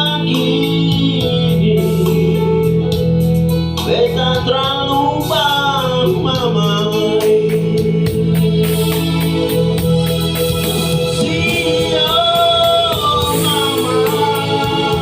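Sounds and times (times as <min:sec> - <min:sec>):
person singing: 0:00.0 - 0:03.1, 0:03.8 - 0:15.0
instrumental backing: 0:00.0 - 0:15.0.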